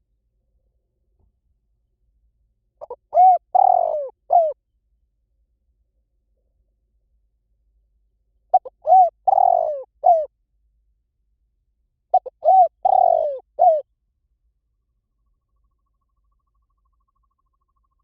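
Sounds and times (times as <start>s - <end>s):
dove cooing: 2.8s - 4.6s, 8.5s - 10.3s, 12.1s - 13.8s.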